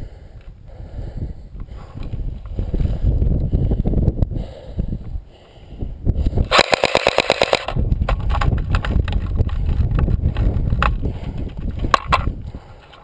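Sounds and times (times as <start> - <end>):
wind rumble on microphone: 0.0 - 13.0
airsoft gun burst: 6.5 - 7.8
gun clicks: 6.5 - 11.0, 11.8 - 13.0.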